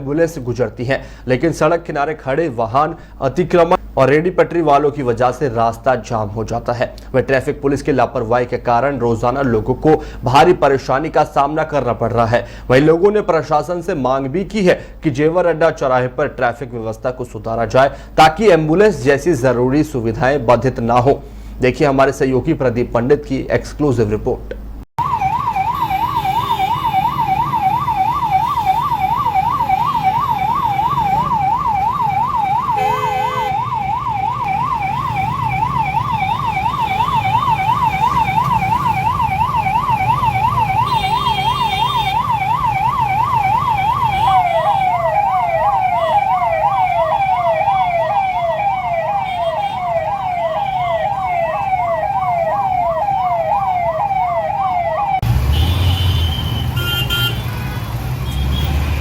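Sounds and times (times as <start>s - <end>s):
rumble of idling traffic: 0.0s - 59.0s
ambulance siren: 25.0s - 57.6s
car horn honks: 32.8s - 33.7s, 40.9s - 42.2s, 44.1s - 45.0s, 49.2s - 49.8s, 55.2s - 59.0s.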